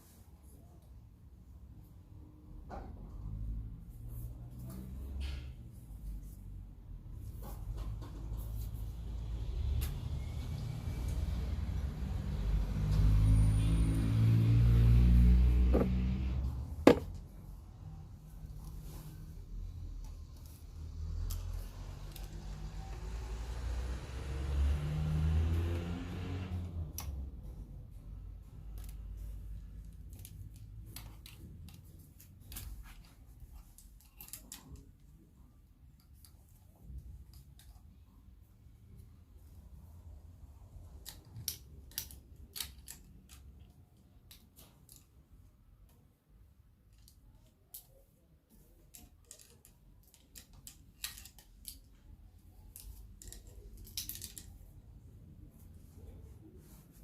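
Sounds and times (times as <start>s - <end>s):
small clicks and scrapes of parts: 2.6s - 14.4s, 15.6s - 39.8s, 40.4s - 57.0s
plastic parts clicking and scraping: 28.5s - 38.0s, 40.8s - 46.0s, 46.8s - 56.2s.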